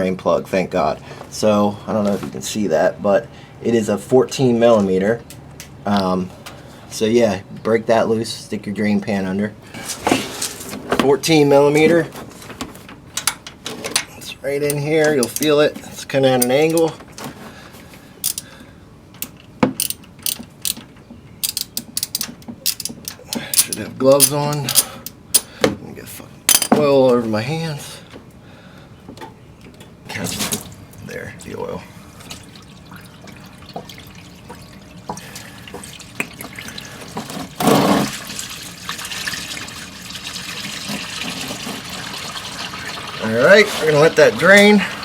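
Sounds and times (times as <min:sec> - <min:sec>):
socket ratchet clicking: 0:18.2 - 0:18.5, 0:19.2 - 0:25.5
oil trickling into drain pan: 0:32.2 - 0:45.0.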